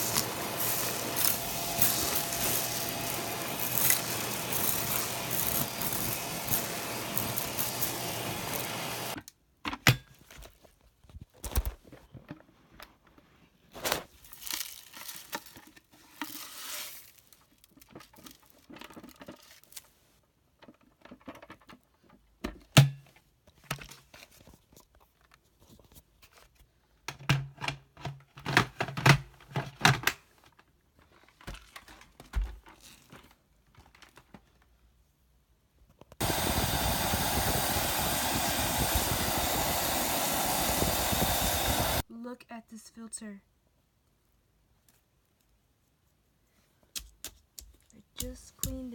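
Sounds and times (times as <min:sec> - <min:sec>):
vacuum cleaner motor whooshing: 0:00.0 - 0:09.2, 0:36.2 - 0:42.0
plastic parts clicking and rustling: 0:09.2 - 0:34.9.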